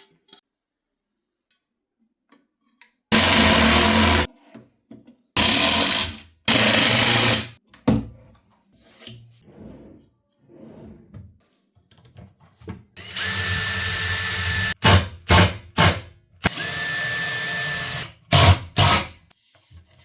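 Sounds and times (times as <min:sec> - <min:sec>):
power drill running: 0:03.1 - 0:04.3, 0:05.4 - 0:07.5, 0:13.0 - 0:14.8, 0:15.8 - 0:18.0.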